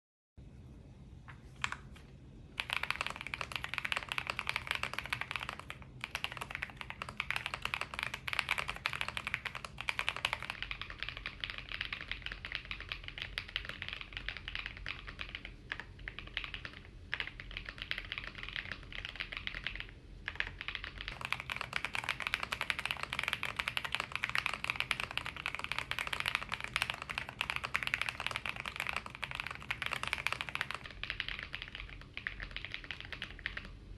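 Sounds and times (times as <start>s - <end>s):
mechanical keyboard typing: 2.6s - 33.8s.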